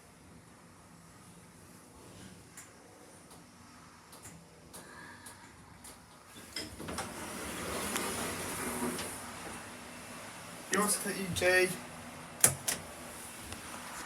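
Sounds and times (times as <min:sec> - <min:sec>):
lift doors sliding: 0:05.9 - 0:13.8.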